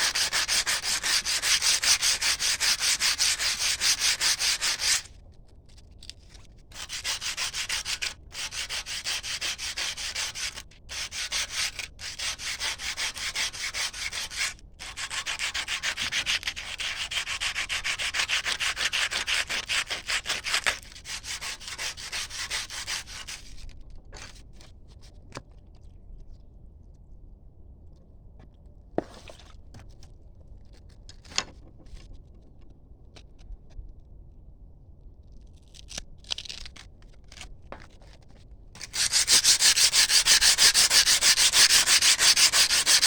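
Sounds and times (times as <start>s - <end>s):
rasping on metal: 38.8s - 43.0s.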